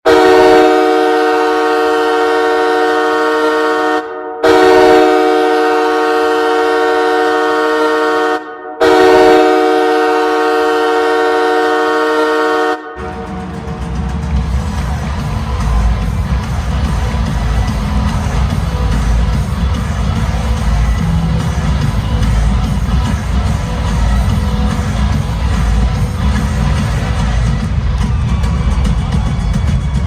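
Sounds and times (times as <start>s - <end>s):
goal horn blasts: 0.1s - 13.9s
bass-heavy music: 0.1s - 30.0s.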